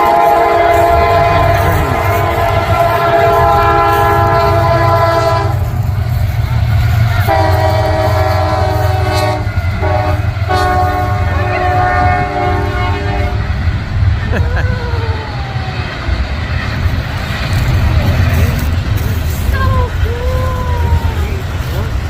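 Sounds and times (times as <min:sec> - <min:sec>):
locomotive air horn blasts: 0:00.0 - 0:05.8, 0:07.1 - 0:13.6
low rumble of passing train: 0:00.0 - 0:22.0.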